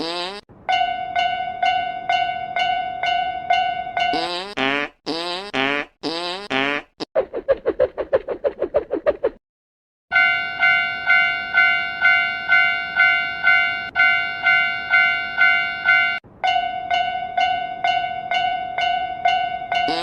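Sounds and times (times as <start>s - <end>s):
railroad crossing bell clanging: 0.6s - 4.2s, 10.1s - 20.0s.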